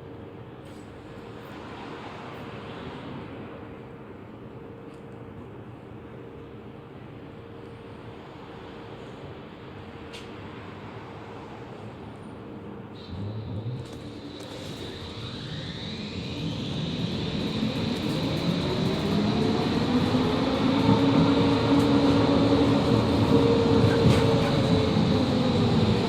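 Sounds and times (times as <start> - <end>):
tram electric drive whine: 0.0 - 26.0
wheels rumbling on rails: 13.0 - 26.0.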